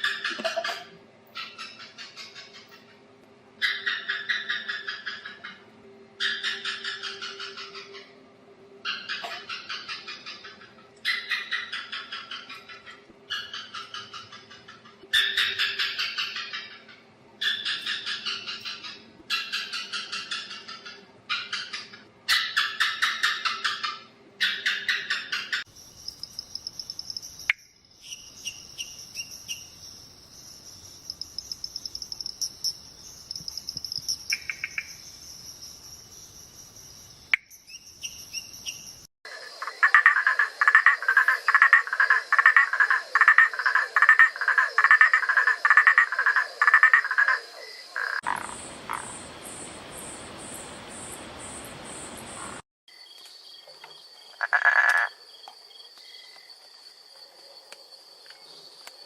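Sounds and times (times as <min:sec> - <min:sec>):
pulsed insect chirping: 0:25.7 - 0:53.6
high insect trill: 0:25.7 - 0:59.0
frog croaking: 0:31.0 - 0:35.0, 0:39.3 - 0:49.2, 0:54.3 - 0:55.2.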